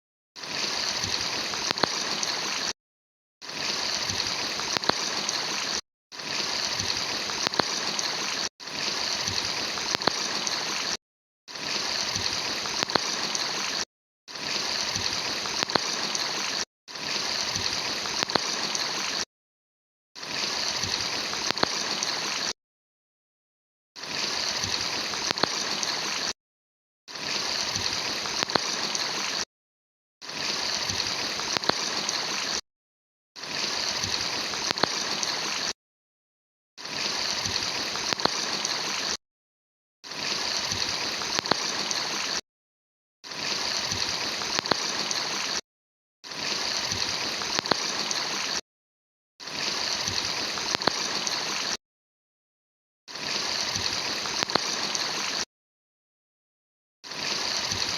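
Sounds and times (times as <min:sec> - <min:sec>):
stream water rushing: 0:00.5 - 0:02.7, 0:03.5 - 0:11.0, 0:11.6 - 0:13.8, 0:14.4 - 0:19.2, 0:20.3 - 0:22.5, 0:24.1 - 0:26.3, 0:27.2 - 0:29.4, 0:30.3 - 0:32.6, 0:33.4 - 0:35.7, 0:36.8 - 0:39.2, 0:40.2 - 0:42.4, 0:43.4 - 0:45.6, 0:46.4 - 0:48.6, 0:49.5 - 0:51.7, 0:53.2 - 0:55.4.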